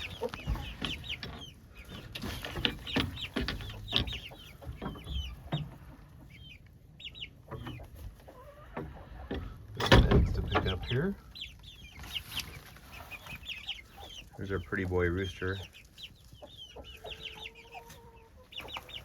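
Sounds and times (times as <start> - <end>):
chickens clucking and calling: 0.0 - 19.0.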